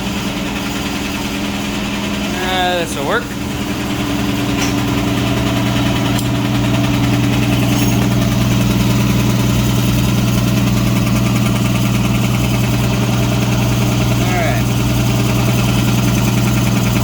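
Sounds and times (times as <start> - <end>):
air compressor humming: 0.0 - 17.0.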